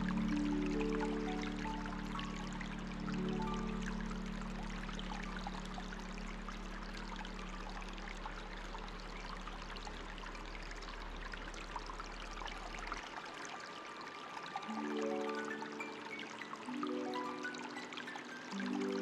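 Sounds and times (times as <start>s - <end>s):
low steady hum: 0.0s - 13.1s
water trickling and splashing: 0.0s - 19.0s.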